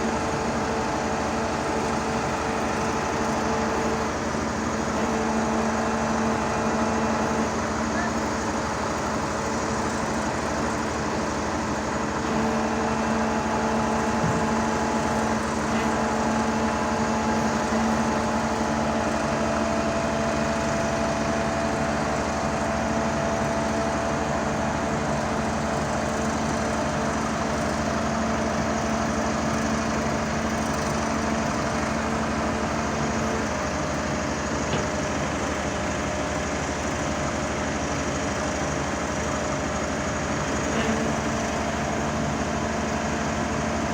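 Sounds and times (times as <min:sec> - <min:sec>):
hydraulic machine engine humming: 0:00.2 - 0:43.9.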